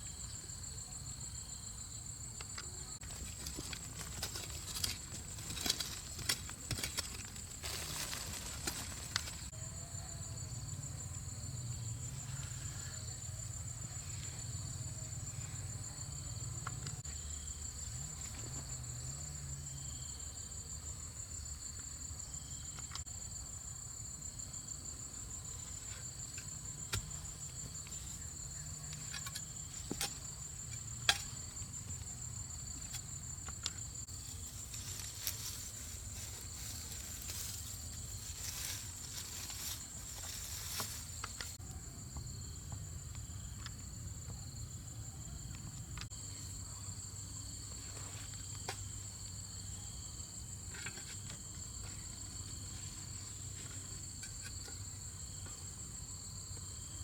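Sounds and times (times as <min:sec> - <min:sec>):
insects trilling: 0:00.0 - 0:57.0.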